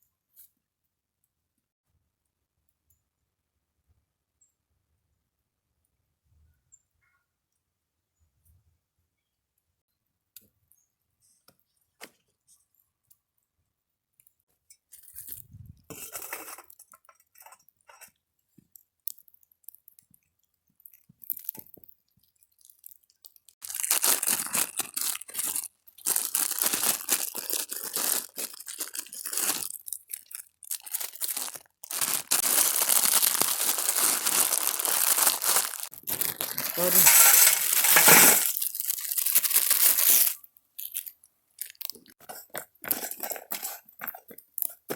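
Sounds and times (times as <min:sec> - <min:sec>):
plastic packaging crinkling: 0:21.0 - 0:44.9.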